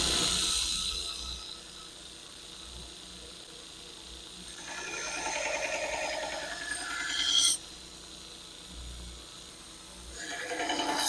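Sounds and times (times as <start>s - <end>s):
knife blade grinding on abrasive: 4.6s - 7.6s, 10.2s - 11.0s.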